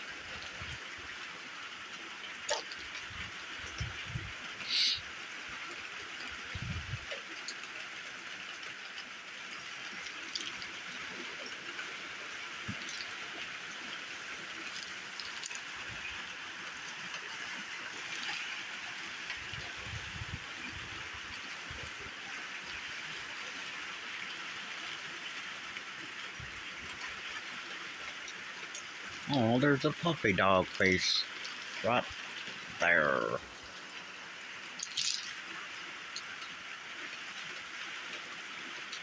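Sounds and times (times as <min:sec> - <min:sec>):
rain falling steadily: 0:00.0 - 0:39.0.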